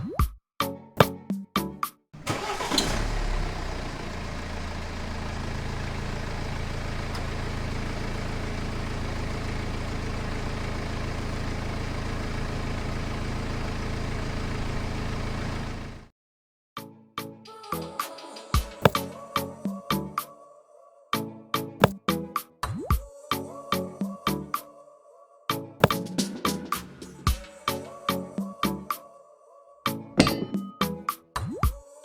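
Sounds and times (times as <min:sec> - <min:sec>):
small engine idling: 0:02.2 - 0:16.1.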